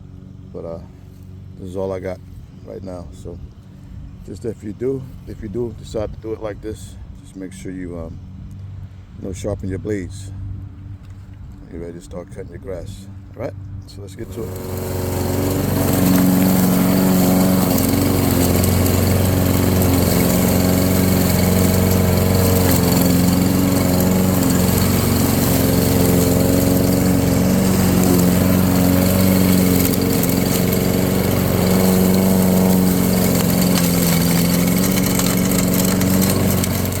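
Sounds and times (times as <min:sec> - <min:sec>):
lawn mower engine mulching leaves: 0:00.0 - 0:05.4, 0:14.1 - 0:37.0.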